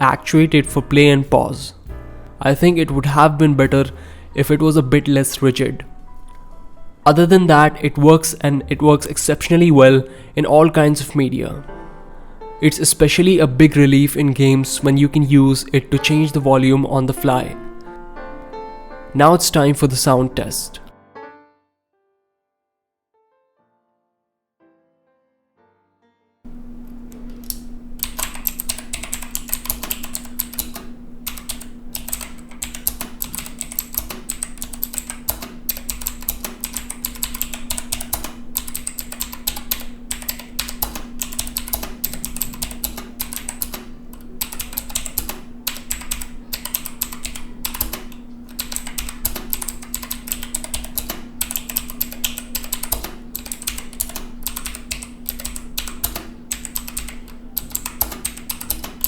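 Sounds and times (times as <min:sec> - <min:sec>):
clicky keyboard typing: 0:27.1 - 0:59.0.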